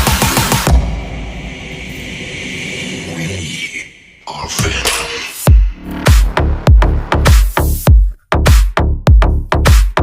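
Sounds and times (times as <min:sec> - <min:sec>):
pounding kick drum: 0:00.0 - 0:01.6, 0:05.5 - 0:10.0
electronic dance music: 0:00.0 - 0:10.0.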